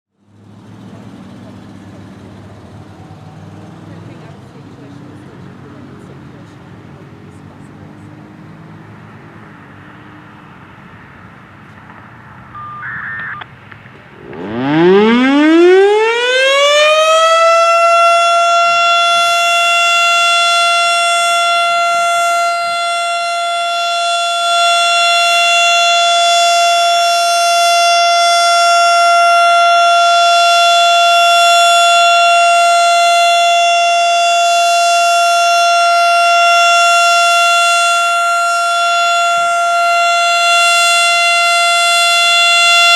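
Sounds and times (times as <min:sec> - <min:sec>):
tornado siren winding up: 0:12.6 - 0:42.9.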